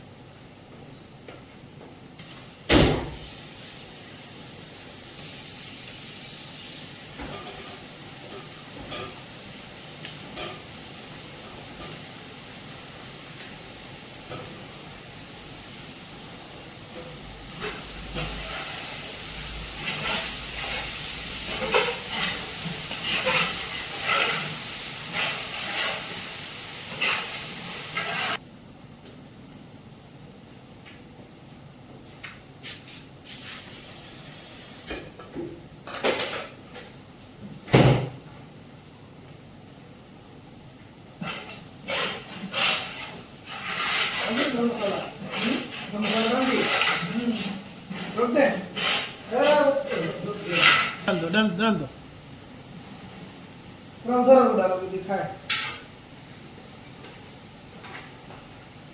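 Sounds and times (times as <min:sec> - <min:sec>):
food hissing in a pot: 0:03.0 - 0:28.4, 0:32.6 - 0:35.1, 0:41.2 - 0:51.1.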